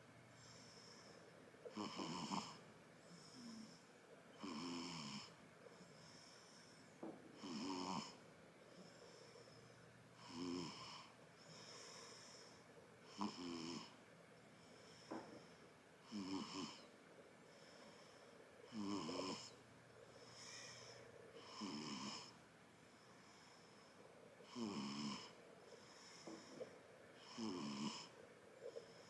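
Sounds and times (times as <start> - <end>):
baby snoring: 1.7 - 2.6, 4.4 - 5.4, 7.4 - 8.2, 10.2 - 11.1, 11.7 - 14.0, 16.0 - 16.9, 18.7 - 19.6, 20.3 - 22.4, 24.4 - 26.5, 27.2 - 29.0.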